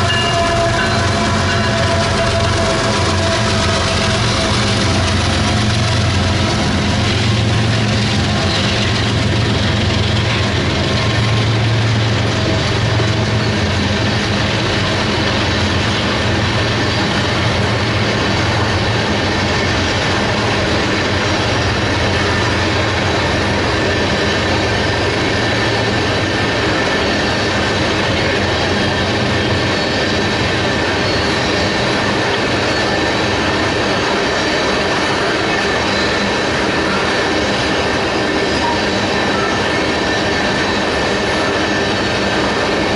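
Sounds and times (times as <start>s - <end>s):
locomotive diesel drone: 0.0s - 42.9s
train wheels on rails: 0.0s - 42.9s
faint wheel squeal: 29.6s - 31.9s.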